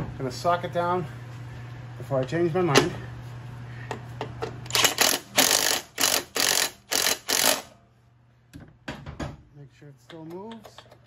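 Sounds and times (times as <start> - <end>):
ratchet wrench clicking: 4.7 - 7.7.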